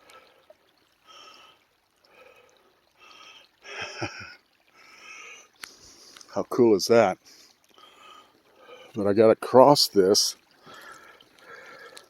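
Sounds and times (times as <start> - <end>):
faint stream trickling: 0.0 - 12.0
person breathing in and out: 4.7 - 6.3, 7.2 - 9.0, 10.6 - 12.0.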